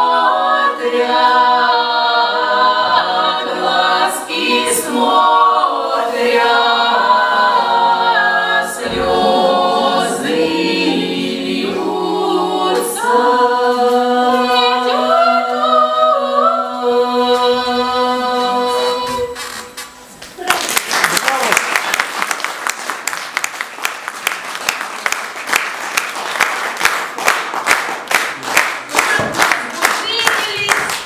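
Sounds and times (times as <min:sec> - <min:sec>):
folk choir singing unaccompanied: 0:00.0 - 0:20.2.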